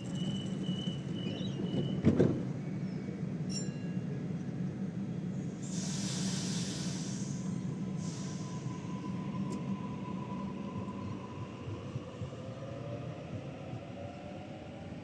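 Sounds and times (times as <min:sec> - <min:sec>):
electric train rumble: 0:00.0 - 0:15.0
train air hiss: 0:05.4 - 0:09.7.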